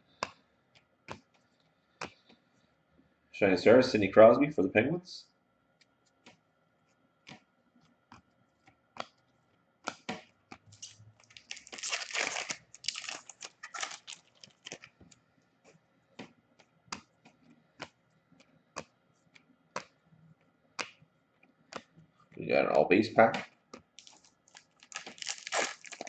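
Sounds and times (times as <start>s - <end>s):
card pack wrapper tearing open: 10.8s - 14.9s, 24.0s - 26.0s.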